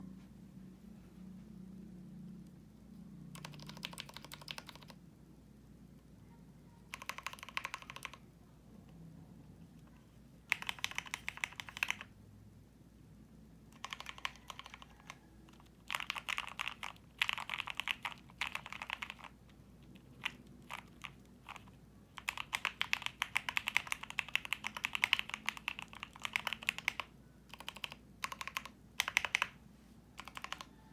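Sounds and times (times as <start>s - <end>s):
mechanical keyboard typing: 3.3s - 5.0s, 6.9s - 8.2s, 10.5s - 12.1s, 13.7s - 29.6s, 30.2s - 30.7s.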